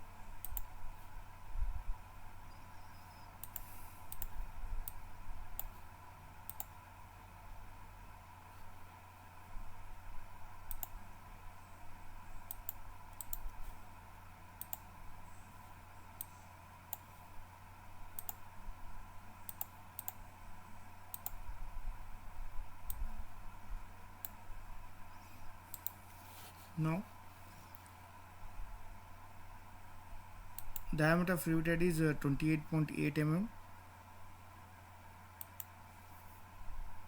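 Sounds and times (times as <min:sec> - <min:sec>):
faint electrical hum: 0:00.0 - 0:37.0
mouse and keyboard clicks: 0:00.4 - 0:00.7, 0:03.4 - 0:05.0, 0:25.7 - 0:26.0.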